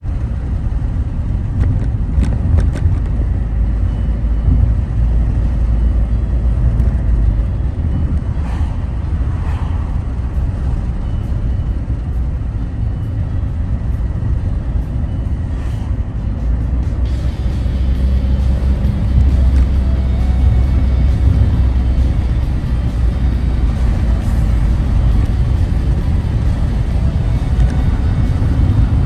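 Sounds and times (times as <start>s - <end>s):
car interior rumble: 0.0s - 29.0s.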